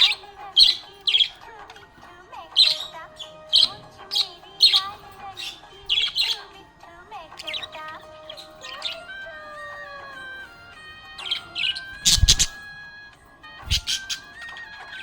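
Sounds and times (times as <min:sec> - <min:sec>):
budgerigar chirping: 0:00.0 - 0:06.5, 0:07.4 - 0:09.7, 0:11.0 - 0:12.6, 0:13.6 - 0:15.0.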